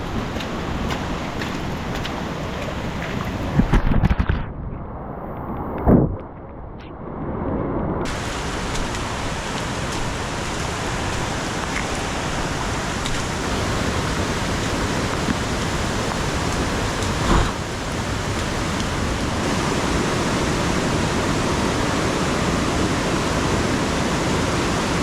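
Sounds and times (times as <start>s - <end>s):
rain: 0.0s - 4.2s, 8.0s - 25.0s
waterfall or stream rushing: 8.1s - 25.0s.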